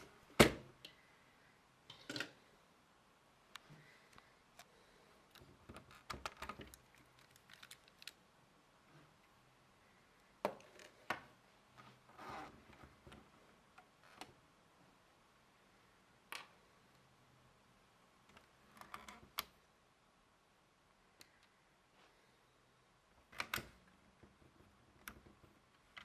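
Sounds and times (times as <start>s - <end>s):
plastic parts clicking and rattling: 5.3s - 8.2s.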